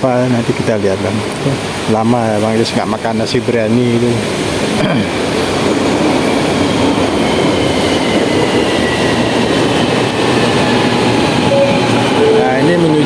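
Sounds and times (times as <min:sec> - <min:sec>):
train wheels rumbling on rail: 0:00.0 - 0:13.0
high motor whine: 0:11.4 - 0:13.0.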